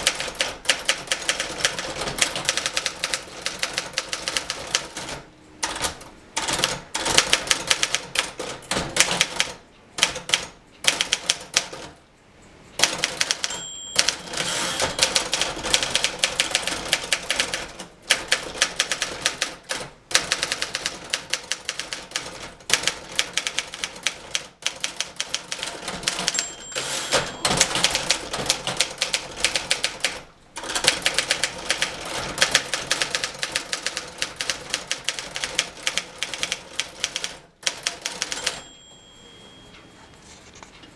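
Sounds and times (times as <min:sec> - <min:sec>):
typewriter bell ring: 0:12.9 - 0:16.3, 0:25.8 - 0:29.8, 0:37.6 - 0:40.2.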